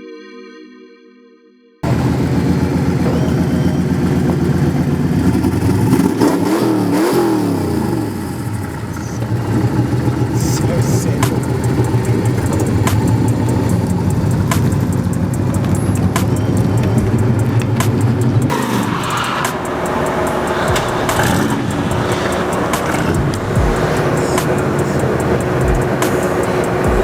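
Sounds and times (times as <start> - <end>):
engine revving: 1.8 - 27.0
sharp clicks: 10.4 - 18.5, 19.1 - 26.9.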